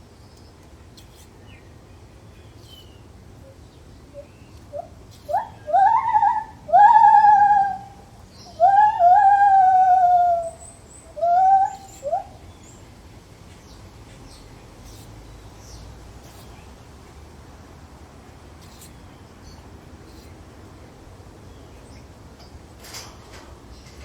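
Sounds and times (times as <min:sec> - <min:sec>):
gibbon hooting calls: 0:04.2 - 0:12.4.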